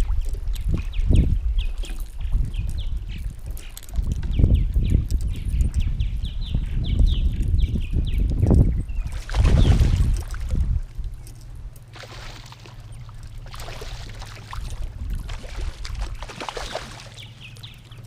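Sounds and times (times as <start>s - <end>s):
steady low hum: 4.3s - 18.0s
water sloshing and splashing: 9.0s - 18.0s.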